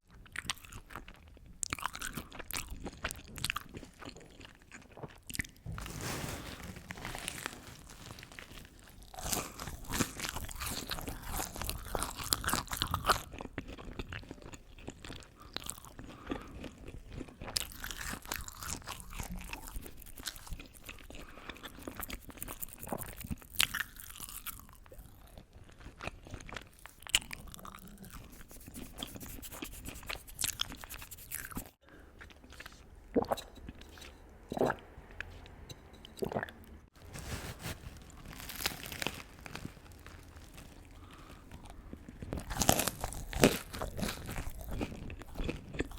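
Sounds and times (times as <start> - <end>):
chewing and crunching food: 0.0 - 45.9
wet mouth sounds: 27.1 - 36.8.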